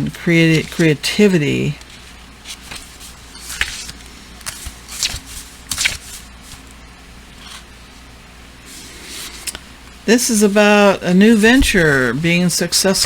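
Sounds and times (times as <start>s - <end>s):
cards rustling and sliding: 0.3s - 6.8s.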